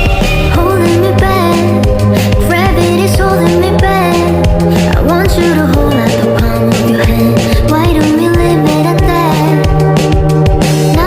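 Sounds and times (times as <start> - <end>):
pop song with steady beat: 0.0 - 11.0.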